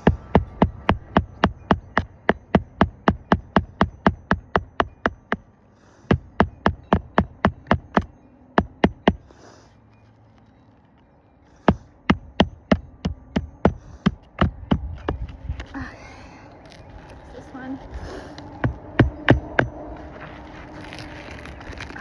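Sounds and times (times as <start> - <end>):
hammer striking nails into shingle: 0.0 - 5.4, 6.0 - 9.4, 11.6 - 15.3, 18.6 - 19.8.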